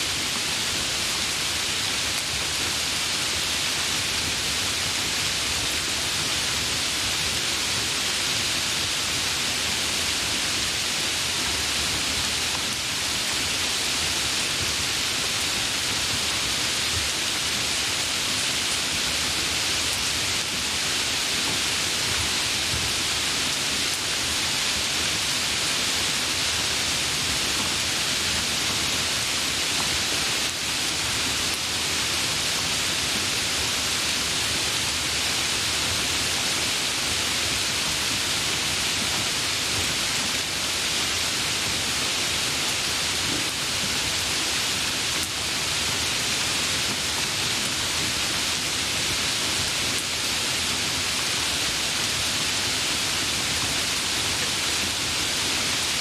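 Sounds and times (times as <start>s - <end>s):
heavy rain falling: 0.0s - 56.0s.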